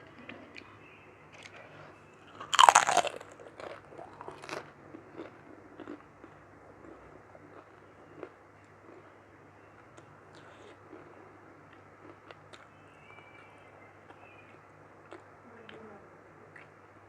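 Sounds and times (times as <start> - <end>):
chewing: 2.3 - 9.1, 10.0 - 12.7
loud bite: 2.4 - 4.6.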